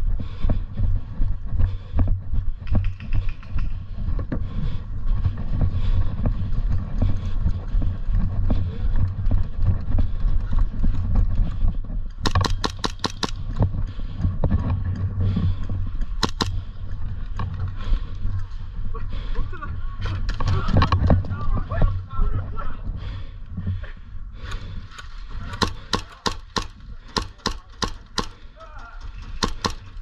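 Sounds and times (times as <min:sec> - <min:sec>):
steady low rumble: 0:00.0 - 0:30.0
airsoft pistol shots: 0:12.3 - 0:13.4, 0:16.2 - 0:16.6, 0:25.6 - 0:28.4, 0:29.4 - 0:30.0.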